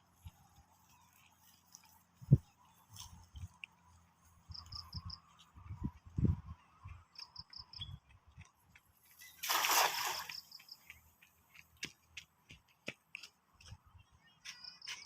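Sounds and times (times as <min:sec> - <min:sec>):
water splash: 0:09.4 - 0:10.5.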